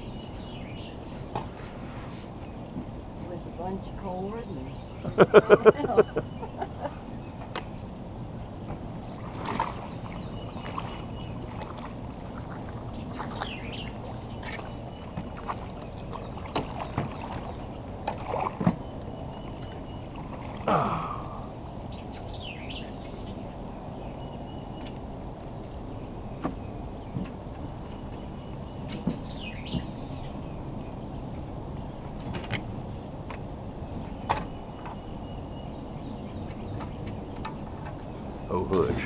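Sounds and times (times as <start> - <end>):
background hiss: 19.0 - 39.0.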